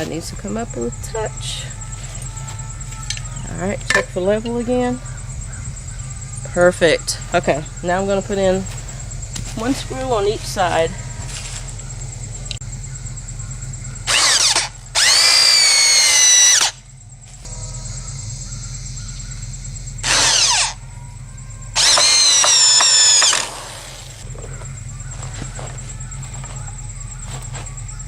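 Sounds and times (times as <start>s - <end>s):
power drill driving screws into wood: 14.1s - 16.8s, 20.0s - 20.8s, 21.8s - 24.2s.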